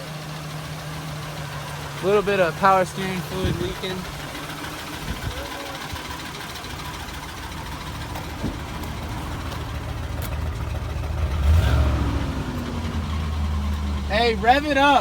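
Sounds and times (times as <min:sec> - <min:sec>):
engine idling with rod knock: 0:00.0 - 0:11.4
engine revving: 0:01.6 - 0:15.0.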